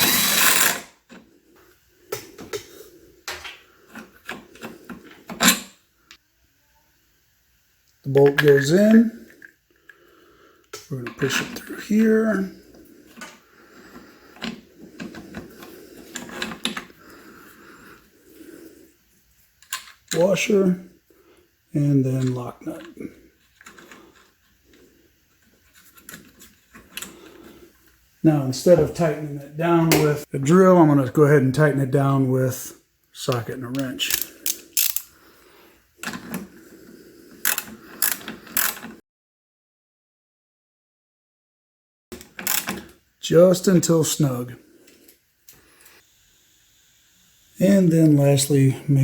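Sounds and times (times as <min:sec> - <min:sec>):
ratchet clicking: 0:00.0 - 0:00.9, 0:34.1 - 0:35.1, 0:37.4 - 0:38.9
small metal hardware clicking: 0:34.1 - 0:35.1.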